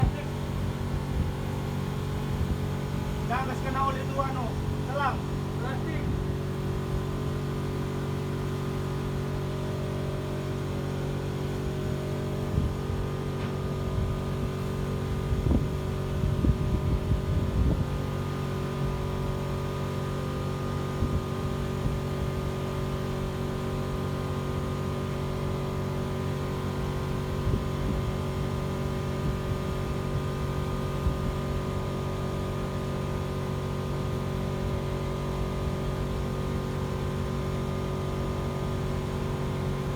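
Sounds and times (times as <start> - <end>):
boat engines running: 0.0 - 39.9.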